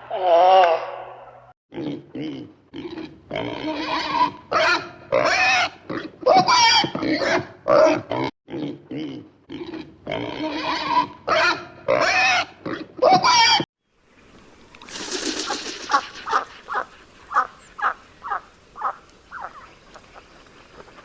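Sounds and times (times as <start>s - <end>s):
farm animal calling: 15.8s - 20.3s.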